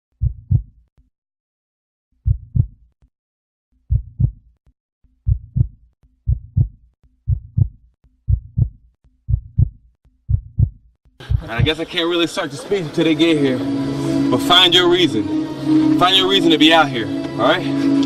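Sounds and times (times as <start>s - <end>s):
heartbeat thumps: 0.2s - 0.8s, 2.2s - 2.8s, 3.9s - 4.5s, 5.2s - 11.9s.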